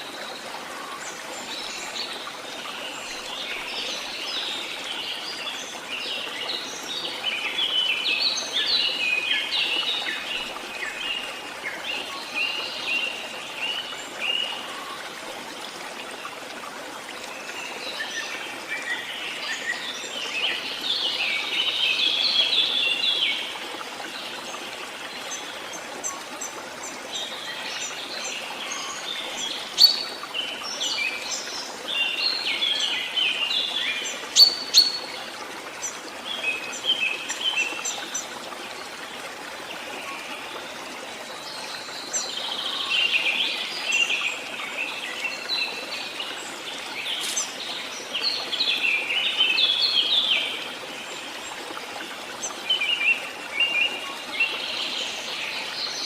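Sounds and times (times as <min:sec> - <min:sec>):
songbirds chirping: 0:16.2 - 0:56.0.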